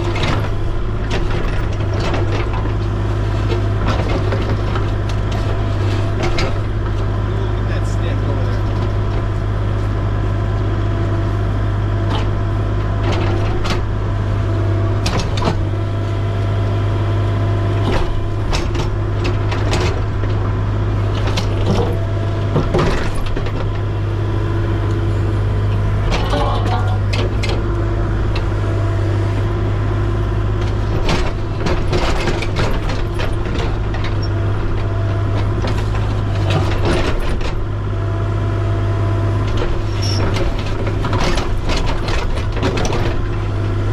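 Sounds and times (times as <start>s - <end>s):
diesel engine running: 0.0s - 43.9s
metal clanks and knocks: 15.0s - 20.4s, 21.1s - 28.5s.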